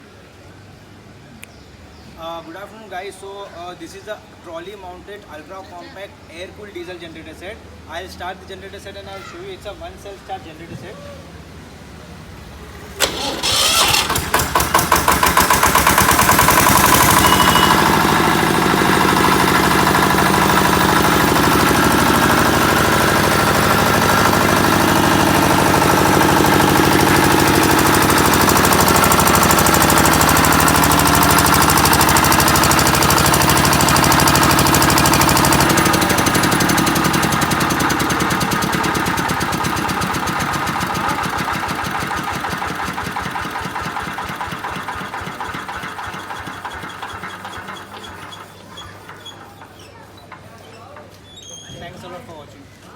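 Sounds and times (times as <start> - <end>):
diesel generator engine running: 12.7 - 50.2.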